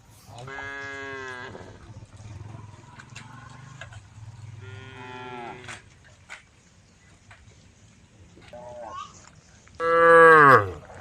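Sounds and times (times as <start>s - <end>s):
cows mooing: 0.3s - 5.9s, 9.8s - 11.0s.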